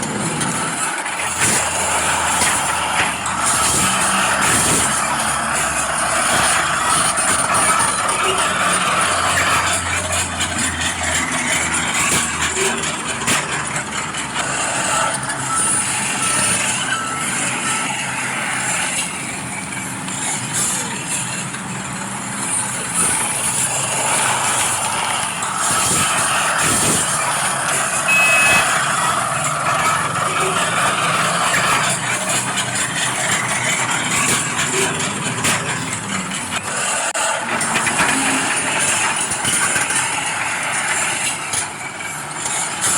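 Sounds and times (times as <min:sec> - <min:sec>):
model excavator motors and gears: 0:00.0 - 0:42.9
evenly spaced beeps: 0:27.9 - 0:29.2.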